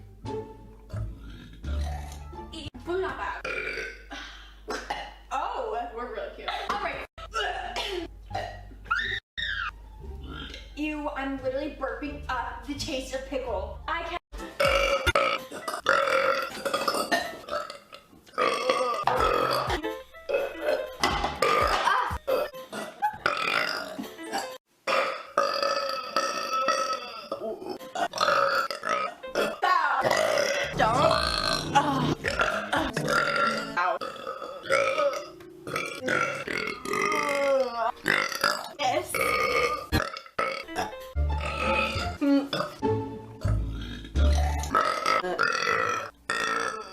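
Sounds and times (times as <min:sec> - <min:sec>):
woman burping: 0:01.7 - 0:02.2, 0:03.4 - 0:05.2, 0:06.6 - 0:08.8, 0:14.6 - 0:42.8, 0:43.4 - 0:46.9.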